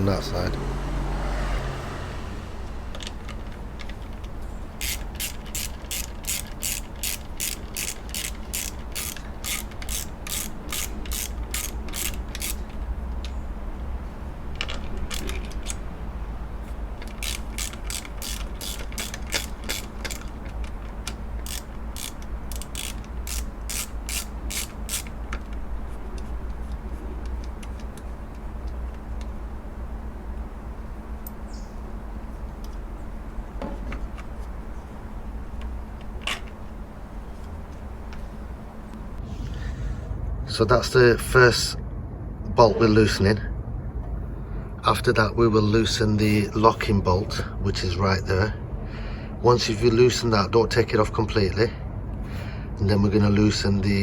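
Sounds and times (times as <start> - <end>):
steady low rumble: 2.1 - 54.0
ratchet wrench clicking: 2.6 - 13.4, 14.5 - 15.9, 17.0 - 29.4.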